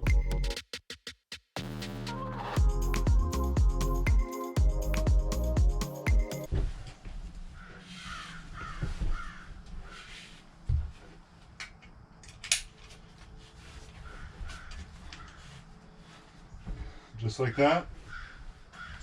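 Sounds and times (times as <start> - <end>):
crow cawing: 7.6 - 9.5, 18.0 - 19.0.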